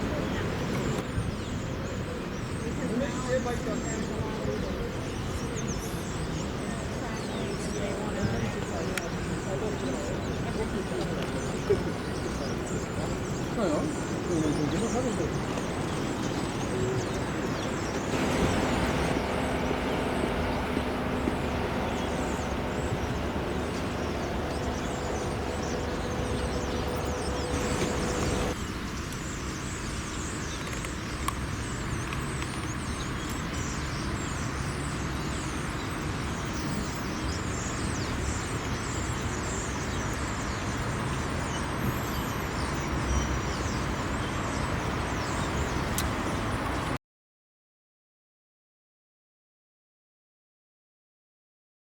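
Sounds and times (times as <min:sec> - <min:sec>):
rumble of machinery and vehicles: 0:00.0 - 0:47.0
droning engine tone: 0:15.7 - 0:28.6.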